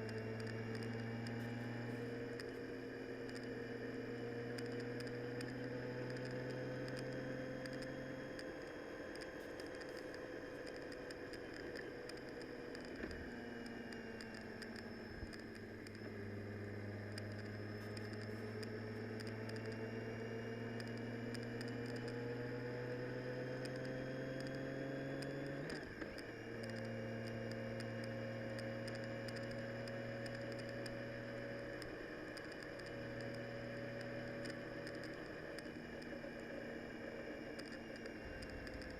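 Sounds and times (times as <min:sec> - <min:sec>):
vehicle engine drone: 0:00.0 - 0:38.9.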